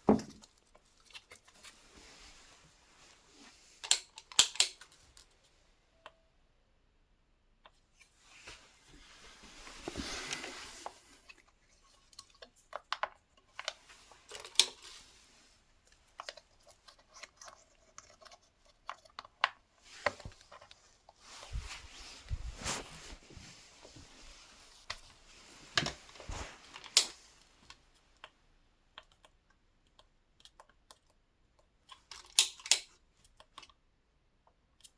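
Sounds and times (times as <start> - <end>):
rustling: 8.0 - 12.8, 13.6 - 27.8.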